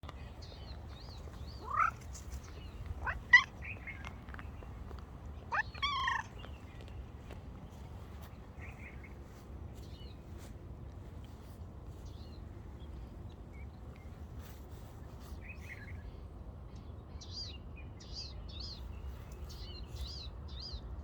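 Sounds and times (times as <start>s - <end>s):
cat short rising calls: 1.5s - 2.2s, 3.0s - 4.0s, 5.5s - 6.3s.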